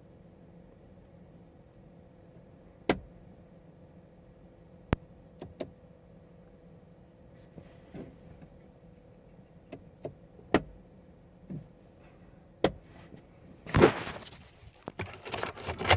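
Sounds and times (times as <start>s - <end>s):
rustling clatter: 13.0s - 15.9s
sharp clicks and knocks: 13.8s - 15.9s.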